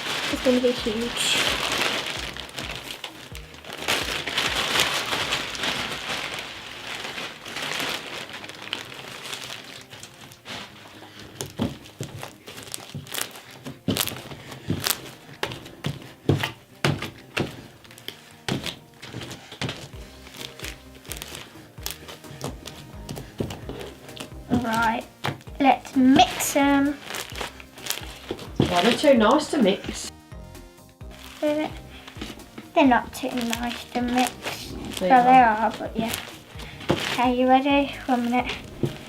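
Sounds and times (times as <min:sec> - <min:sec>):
foam beads shaken from plastic packet: 0:00.0 - 0:10.9, 0:25.8 - 0:30.0, 0:31.0 - 0:39.0
background music: 0:00.0 - 0:39.0.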